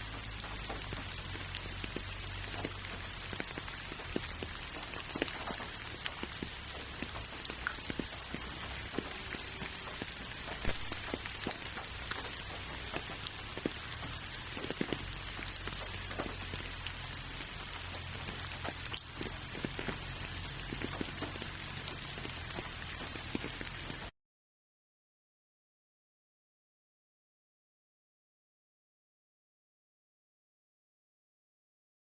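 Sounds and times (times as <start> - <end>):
low steady rumble: 0.0 - 24.1
rain falling: 0.0 - 24.1.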